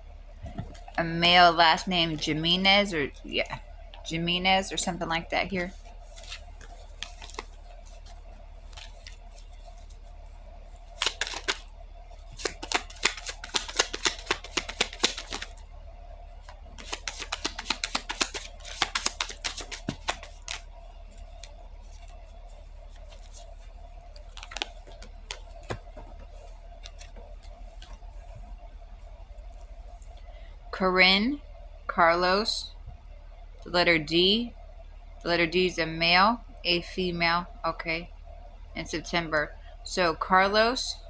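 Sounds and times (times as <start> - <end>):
steady low hum: 0.0 - 41.0.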